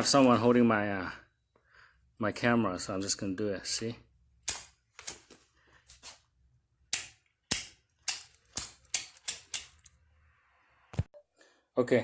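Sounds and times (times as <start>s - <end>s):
sharp metallic clicks: 6.9s - 10.0s.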